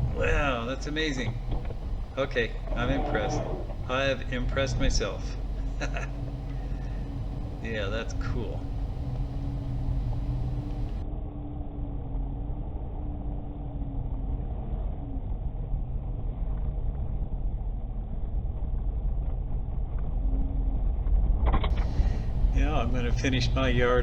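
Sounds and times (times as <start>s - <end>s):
vehicle engine rumbling: 0.0s - 11.0s, 21.7s - 24.0s.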